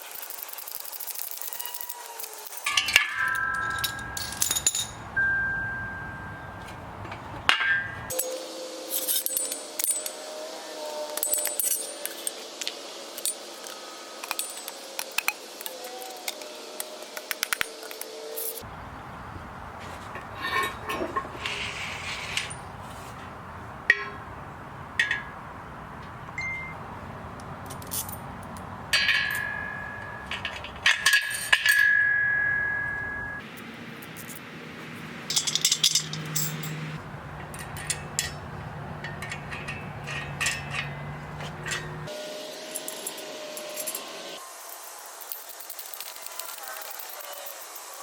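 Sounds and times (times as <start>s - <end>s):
steel parts clinking and clanking: 0.0s - 18.7s, 19.8s - 22.8s, 23.9s - 26.8s, 27.4s - 34.4s, 35.2s - 48.0s
sharp metal knocks ringing: 2.6s - 8.5s, 23.9s - 24.4s, 25.0s - 25.5s, 26.4s - 26.8s, 27.6s - 33.4s, 35.3s - 42.1s.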